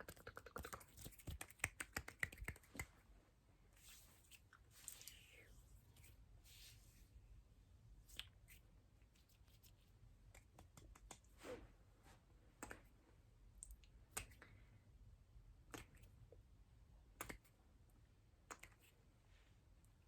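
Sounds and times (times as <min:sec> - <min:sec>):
wet mouth clicks: 0:00.0 - 0:02.9, 0:15.7 - 0:16.1, 0:18.5 - 0:18.8.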